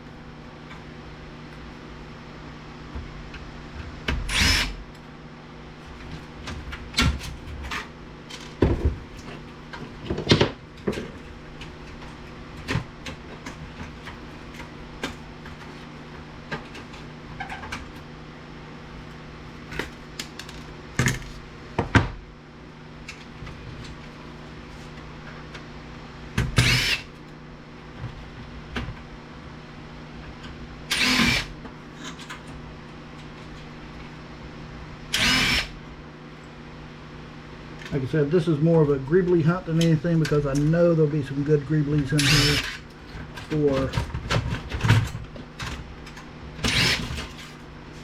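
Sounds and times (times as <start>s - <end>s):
steady low hum: 0.0s - 48.0s
tools and metal parts clattering: 42.6s - 45.8s.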